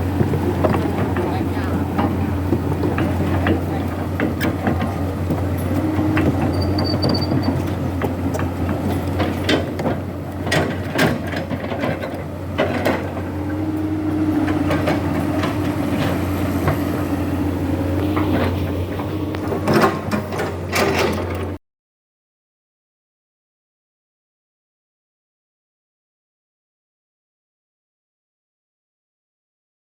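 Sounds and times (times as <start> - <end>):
excavator diesel engine humming: 0.0 - 21.6
sharp knocks and clanks: 0.1 - 21.6.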